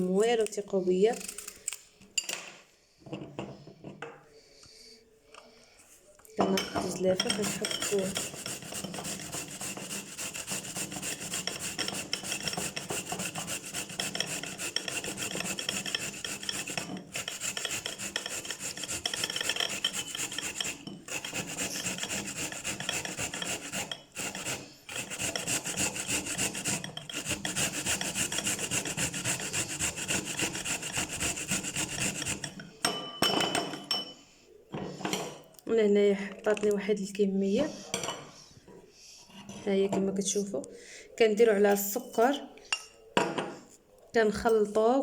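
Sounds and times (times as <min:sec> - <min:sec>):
turnip grated on metal grater: 0:01.1 - 0:01.6, 0:07.2 - 0:32.6.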